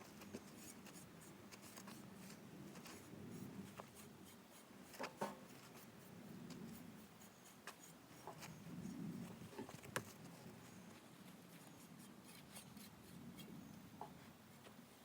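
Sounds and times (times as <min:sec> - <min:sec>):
brush rubbing horse coat: 0:00.0 - 0:09.5.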